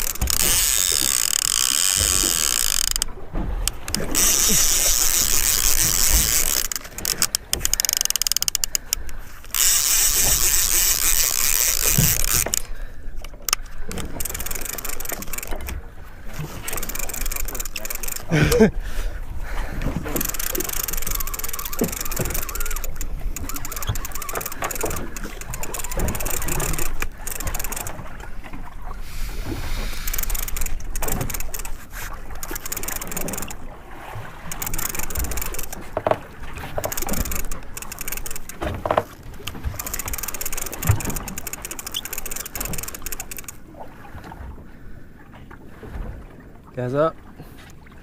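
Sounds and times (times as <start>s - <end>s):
wind and water rushing hiss: 29.0s - 32.0s.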